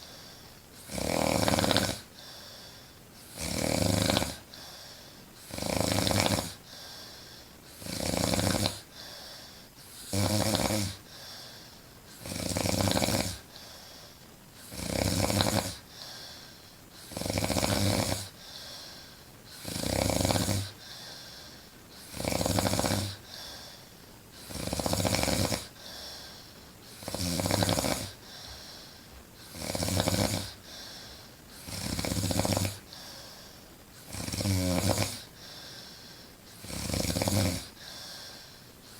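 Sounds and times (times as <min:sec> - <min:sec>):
quiet breathing: 0:00.0 - 0:00.9, 0:01.8 - 0:03.4, 0:04.3 - 0:05.6, 0:06.5 - 0:10.2, 0:10.9 - 0:12.4, 0:13.0 - 0:38.9
woman snoring loudly: 0:00.8 - 0:02.1, 0:03.3 - 0:04.4, 0:05.4 - 0:06.6, 0:07.7 - 0:08.8, 0:10.0 - 0:11.0, 0:12.2 - 0:13.5, 0:14.6 - 0:15.8, 0:17.0 - 0:18.3, 0:19.6 - 0:20.8, 0:22.0 - 0:23.2, 0:24.4 - 0:26.0, 0:27.0 - 0:28.2, 0:29.4 - 0:30.6, 0:31.6 - 0:32.9, 0:34.0 - 0:35.3, 0:36.6 - 0:38.0.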